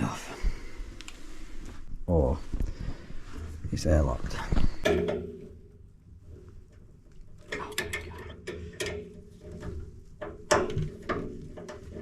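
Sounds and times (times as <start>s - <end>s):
radiator valve clicks and knocks: 7.5s - 12.0s.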